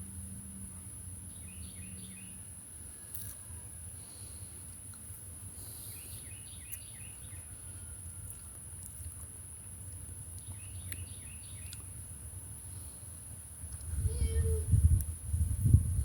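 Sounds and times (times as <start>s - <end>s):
bird chirps: 1.3s - 2.5s, 5.7s - 7.7s, 10.4s - 11.9s.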